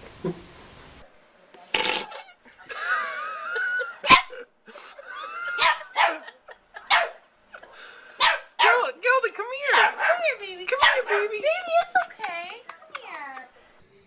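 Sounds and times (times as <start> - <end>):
dog barking: 4.1 - 4.4, 5.6 - 7.2, 8.2 - 8.9, 9.7 - 11.4.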